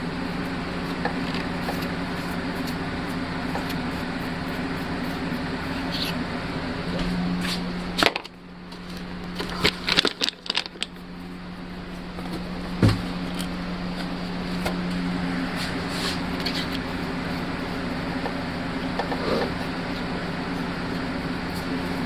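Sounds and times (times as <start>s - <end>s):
metal lathe humming: 0.0s - 22.0s.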